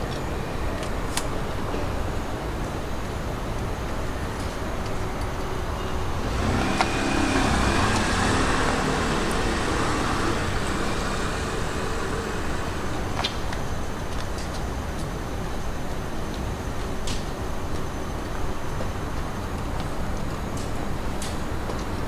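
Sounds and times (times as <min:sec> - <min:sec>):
background traffic noise: 0:00.0 - 0:22.0
vehicle passing by: 0:04.8 - 0:14.1.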